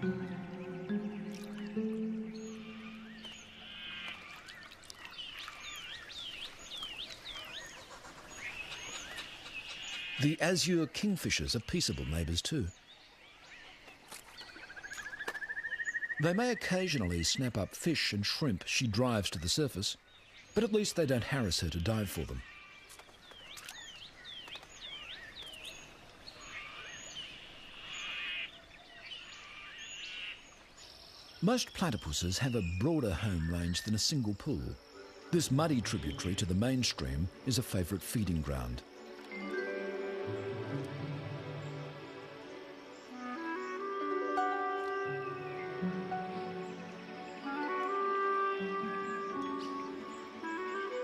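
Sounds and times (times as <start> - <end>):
thin high bird calls: 0.0 - 10.4, 12.9 - 17.1, 22.4 - 31.4
birds chirping: 0.0 - 51.0
bird whistling downward notes: 15.0 - 16.2.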